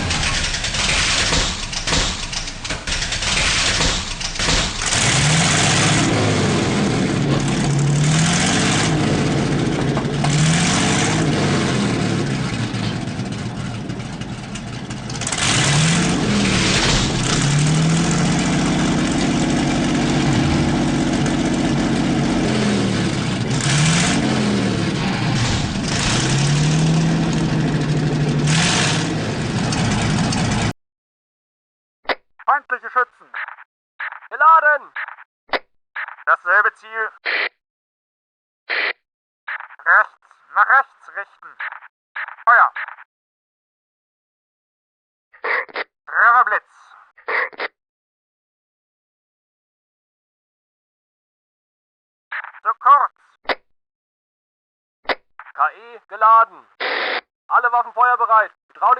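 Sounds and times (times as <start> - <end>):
simulated tank engine revving: 0.0 - 30.8.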